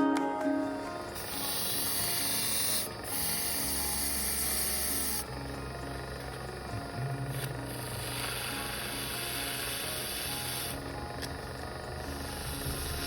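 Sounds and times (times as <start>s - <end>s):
hissing spray: 1.2s - 5.3s.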